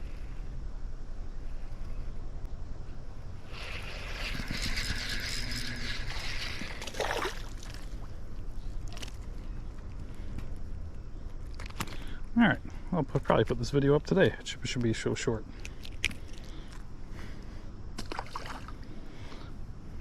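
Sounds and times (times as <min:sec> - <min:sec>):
flowing river water: 0:03.5 - 0:08.2.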